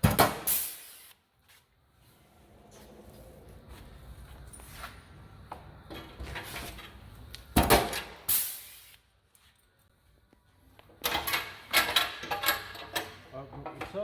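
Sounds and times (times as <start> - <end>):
short hiss: 8.3 - 9.0.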